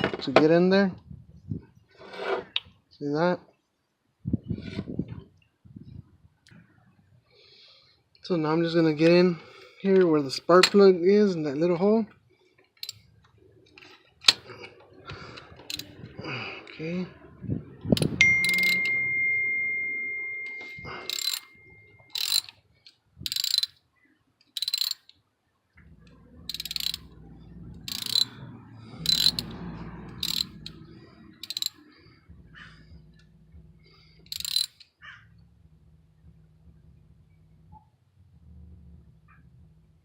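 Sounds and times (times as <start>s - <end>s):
ratchet wrench clicking: 12.8s - 13.0s, 15.6s - 16.0s, 18.0s - 19.0s, 21.1s - 22.6s, 23.2s - 23.8s, 24.6s - 25.1s, 26.5s - 27.1s, 27.8s - 28.4s, 29.0s - 30.8s, 31.4s - 31.8s, 34.2s - 34.9s
metallic clink ringing: 18.0s - 22.5s.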